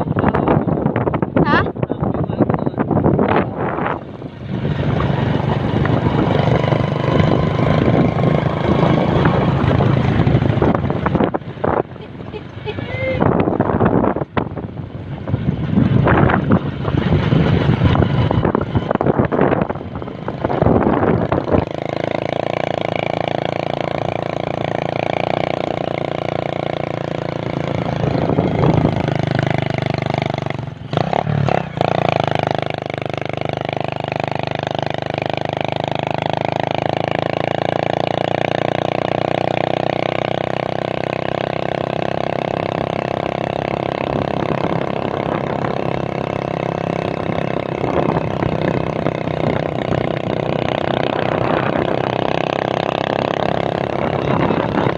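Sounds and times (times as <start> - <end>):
wind on microphone: 0.0 - 54.9
small engine running: 4.3 - 13.2.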